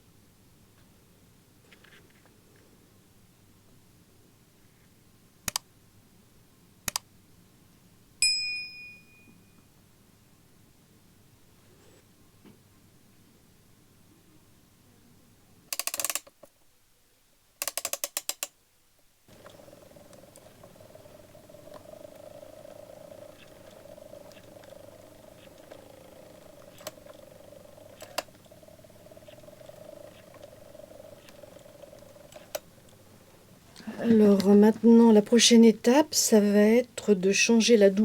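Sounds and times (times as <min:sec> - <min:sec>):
clockwork ratcheting clicks: 0:15.7 - 0:16.3, 0:17.6 - 0:18.5, 0:19.3 - 0:33.6
clockwork whirr with ticks: 0:15.7 - 0:16.3, 0:17.6 - 0:18.5, 0:19.3 - 0:38.0.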